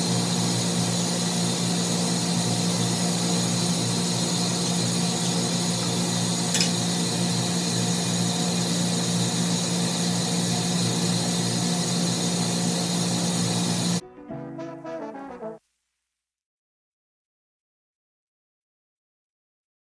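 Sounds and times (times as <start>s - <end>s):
machinery humming and hissing: 0.0s - 14.0s
brass music: 14.0s - 15.6s.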